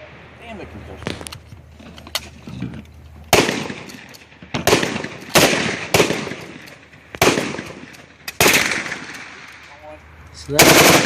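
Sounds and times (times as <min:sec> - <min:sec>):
gunshots echoing: 0:03.3 - 0:09.6, 0:10.6 - 0:11.0.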